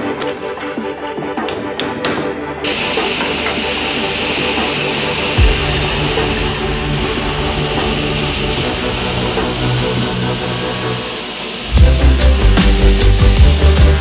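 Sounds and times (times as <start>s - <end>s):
power tool whining: 2.6s - 14.0s
low hum: 4.0s - 14.0s.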